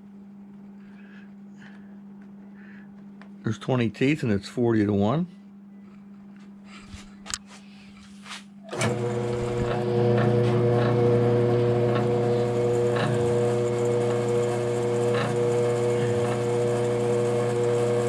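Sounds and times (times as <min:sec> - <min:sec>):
milling machine humming: 0:08.6 - 0:18.0.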